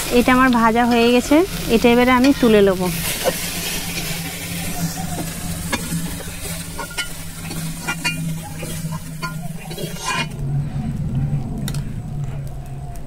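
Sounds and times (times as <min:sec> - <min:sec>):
oil sizzling: 0:00.0 - 0:10.4
spatula scraping and clinking in pan: 0:05.2 - 0:10.4.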